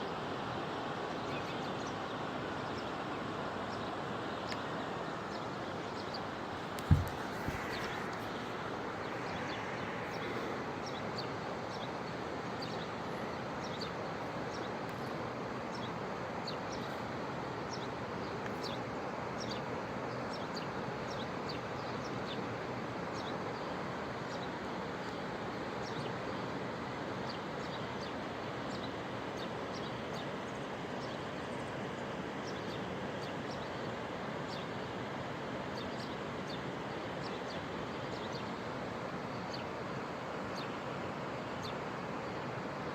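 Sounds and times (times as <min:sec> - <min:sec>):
small birds chirping: 0:01.1 - 0:13.0, 0:35.7 - 0:42.7.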